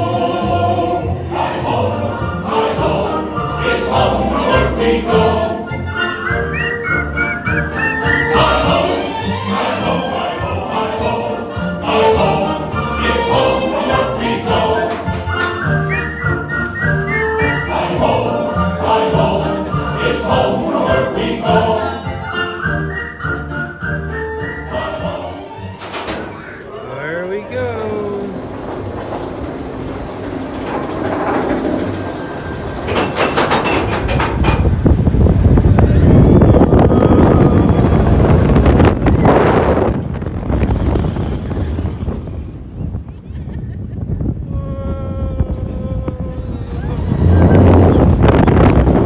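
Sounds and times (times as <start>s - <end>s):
choir singing with music: 0.0s - 26.3s
roller coaster running on track: 0.0s - 49.0s
wind buffeting microphone: 0.0s - 49.0s.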